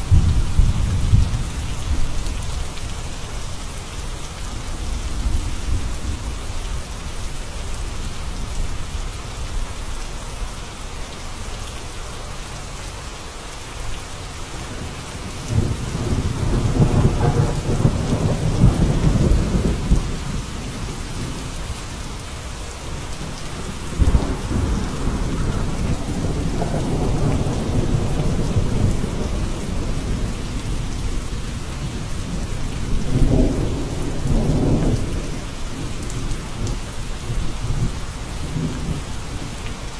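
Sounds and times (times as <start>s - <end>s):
thunder rumbling: 0.0s - 2.8s, 14.5s - 39.9s
steady rain falling: 0.0s - 39.9s.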